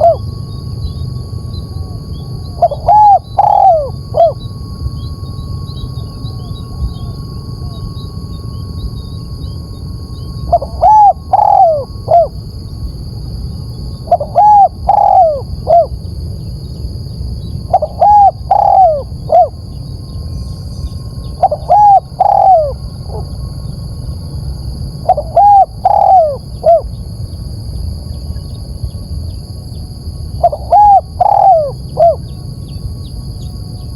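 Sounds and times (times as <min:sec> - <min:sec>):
dove cooing: 0:00.0 - 0:00.3, 0:01.7 - 0:04.5, 0:10.5 - 0:12.4, 0:14.0 - 0:16.0, 0:17.7 - 0:19.6, 0:21.3 - 0:23.4, 0:25.0 - 0:26.9, 0:30.4 - 0:32.4
steady background hiss: 0:00.0 - 0:33.9.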